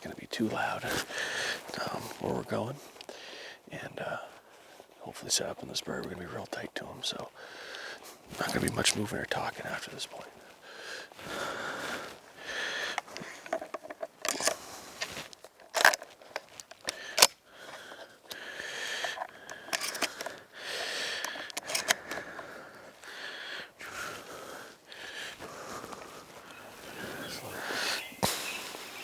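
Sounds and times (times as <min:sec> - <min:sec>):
clothing and gear rustling: 0:00.0 - 0:03.1, 0:05.8 - 0:29.0
shotgun metallic clicks: 0:13.0 - 0:14.7, 0:15.3 - 0:18.4, 0:19.0 - 0:22.5.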